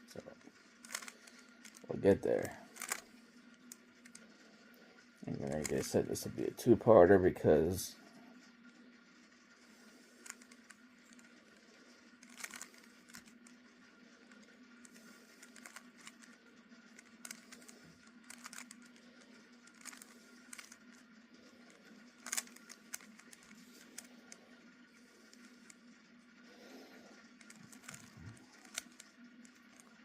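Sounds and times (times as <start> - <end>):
faint steady hum: 0.0 - 30.0
rubik's cube plastic clicks: 0.8 - 1.8, 2.4 - 3.0, 10.2 - 11.4, 12.2 - 13.6, 14.3 - 21.0, 21.6 - 24.4, 27.4 - 30.0.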